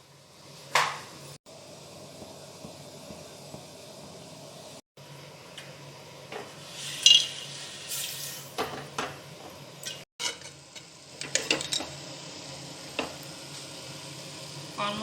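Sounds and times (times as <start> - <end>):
popcorn popping in a pan: 0.7 - 4.4.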